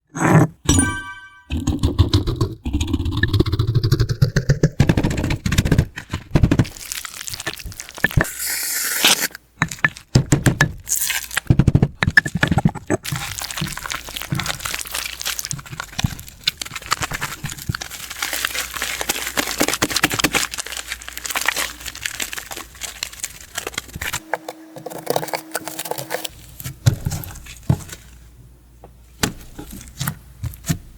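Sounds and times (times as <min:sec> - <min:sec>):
hands squishing slime: 0:04.8 - 0:08.4, 0:09.0 - 0:24.2.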